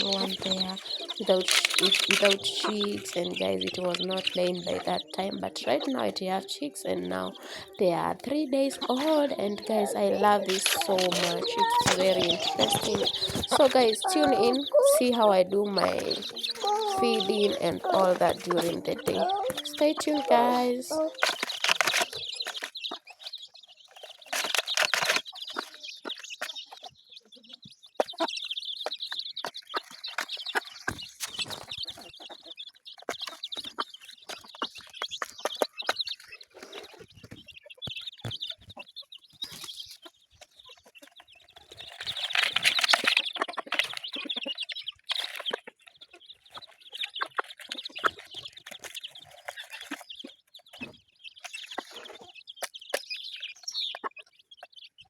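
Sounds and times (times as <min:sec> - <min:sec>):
chickens clucking and calling: 0:00.0 - 0:55.0.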